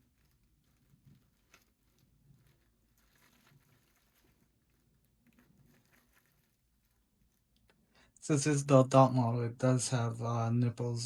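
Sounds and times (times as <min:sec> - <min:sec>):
soft handling clicks and rustles: 0:00.0 - 0:07.9.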